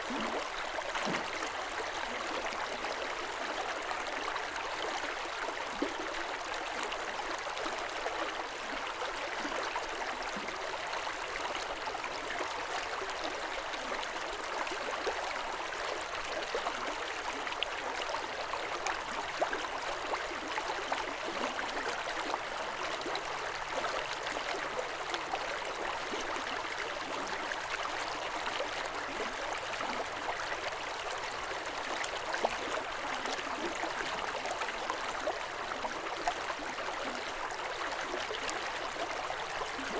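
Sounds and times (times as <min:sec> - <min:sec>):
river water over stones: 0:00.0 - 0:39.9.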